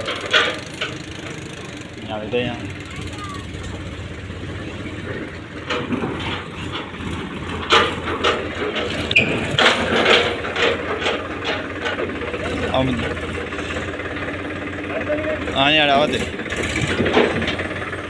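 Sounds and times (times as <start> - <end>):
metallic clanks of hitch: 0.0 - 2.5, 4.8 - 14.5
tractor engine idling: 0.0 - 18.0.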